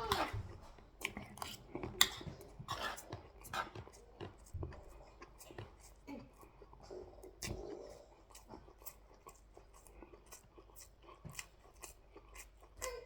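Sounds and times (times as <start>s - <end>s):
man chewing and smacking: 0.0s - 13.0s.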